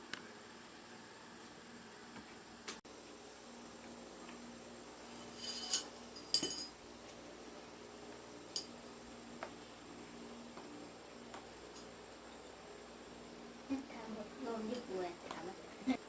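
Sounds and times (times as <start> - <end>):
faint steady hum: 0.0 - 16.0
light metallic clinks: 5.3 - 6.8.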